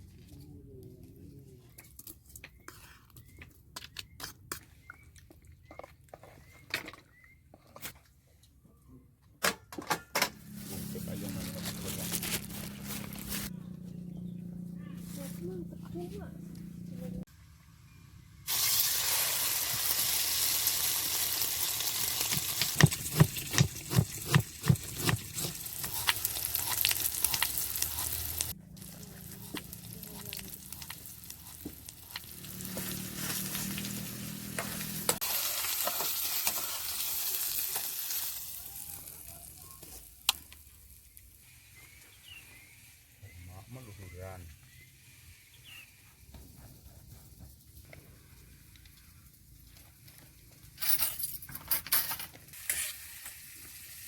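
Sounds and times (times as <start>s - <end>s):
food sizzling in a frying pan: 18.5s - 22.8s, 25.6s - 40.0s, 52.6s - 54.0s.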